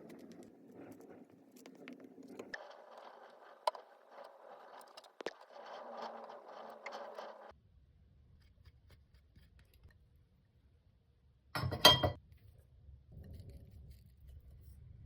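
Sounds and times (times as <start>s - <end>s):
glass clink: 11.6s - 12.2s.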